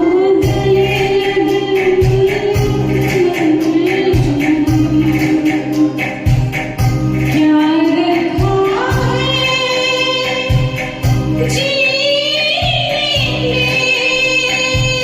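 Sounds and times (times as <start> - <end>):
low pulsing beat: 0.0 - 11.7.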